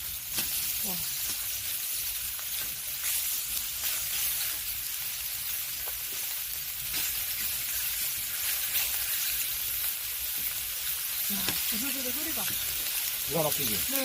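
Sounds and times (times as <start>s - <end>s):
pork sizzling on a griddle: 0.0s - 14.0s
small crackles: 0.2s - 14.0s.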